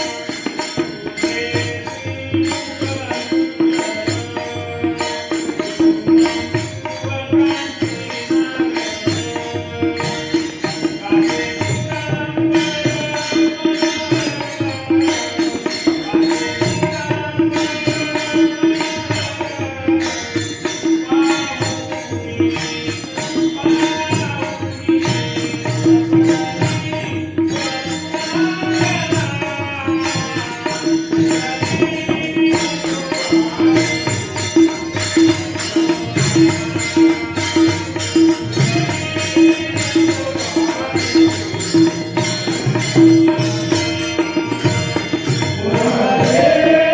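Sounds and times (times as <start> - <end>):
regular drum beat: 21.0 - 46.9.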